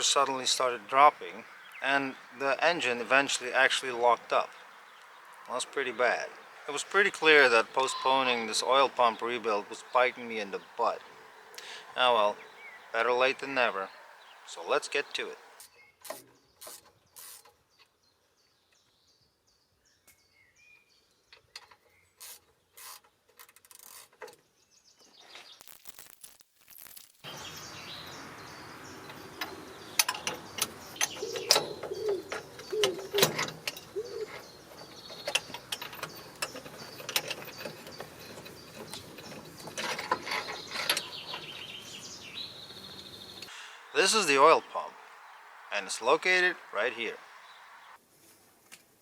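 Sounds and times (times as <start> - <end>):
steady background hiss: 0.0 - 15.6, 40.0 - 49.0.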